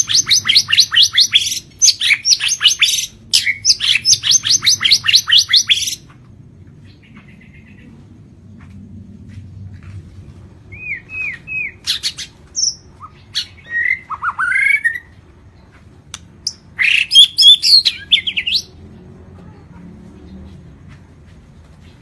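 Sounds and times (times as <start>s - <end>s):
songbird singing: 0.0s - 8.2s, 10.6s - 18.8s.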